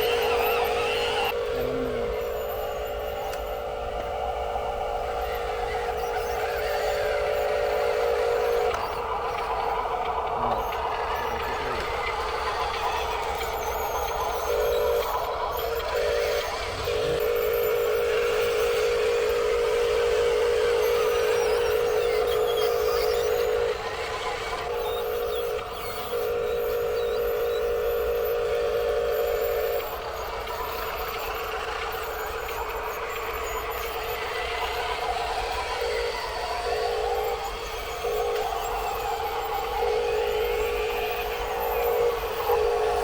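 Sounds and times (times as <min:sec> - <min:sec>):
small electric motor whining: 0:00.0 - 0:43.0.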